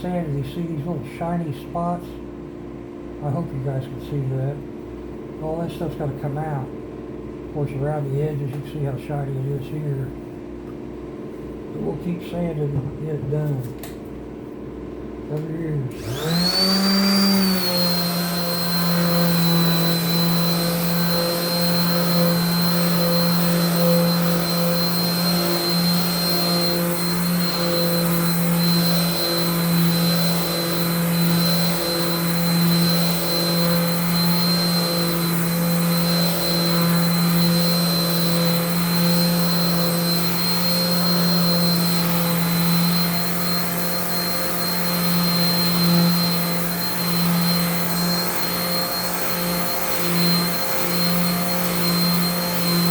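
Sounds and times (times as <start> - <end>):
electric sander whining: 15.9 - 52.9.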